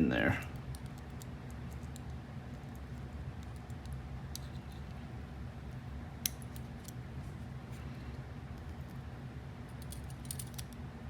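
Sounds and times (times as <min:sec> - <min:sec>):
steady low hum: 0:00.0 - 0:11.0
small metallic lock clicks: 0:09.8 - 0:10.8.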